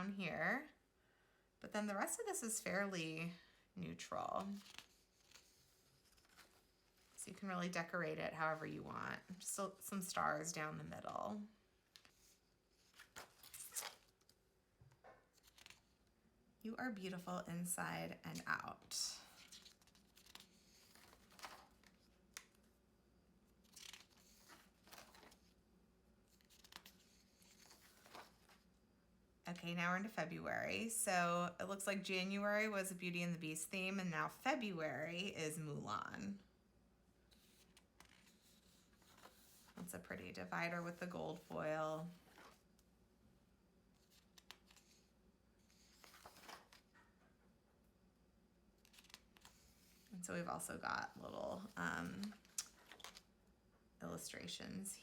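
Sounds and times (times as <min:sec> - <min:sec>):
paper pages turning: 0:04.0 - 0:07.4, 0:11.0 - 0:14.4, 0:15.0 - 0:16.0, 0:18.3 - 0:22.8, 0:23.5 - 0:25.6, 0:26.3 - 0:28.7, 0:37.3 - 0:42.8, 0:43.9 - 0:47.1, 0:48.8 - 0:50.1, 0:51.2 - 0:53.3.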